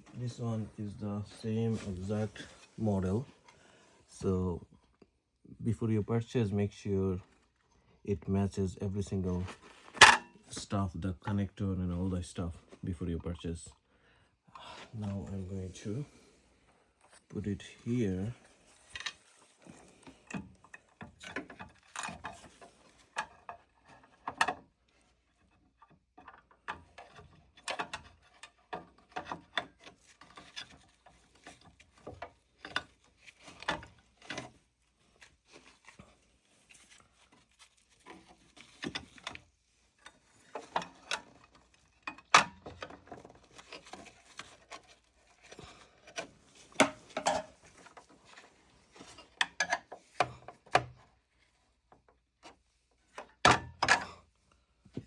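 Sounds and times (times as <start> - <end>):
clicks and knocks of handling hardware: 9.9 - 10.3, 36.8 - 51.2.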